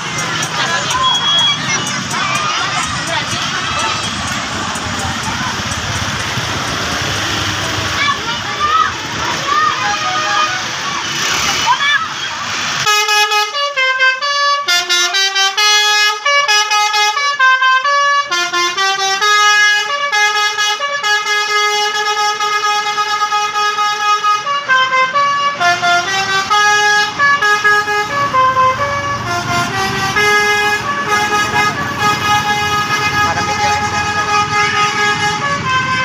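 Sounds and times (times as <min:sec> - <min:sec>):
musical air horn melody: 0:12.8 - 0:36.0.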